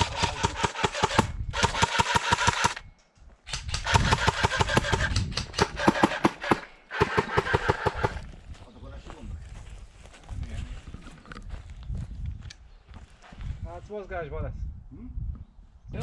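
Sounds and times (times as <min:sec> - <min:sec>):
airsoft gun firing full-auto: 0:00.0 - 0:02.8, 0:03.6 - 0:08.2.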